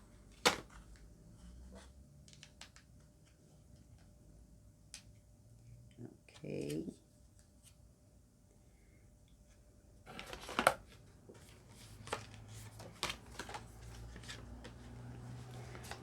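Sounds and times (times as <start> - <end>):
packaging rustling and crinkling: 10.1 - 16.0.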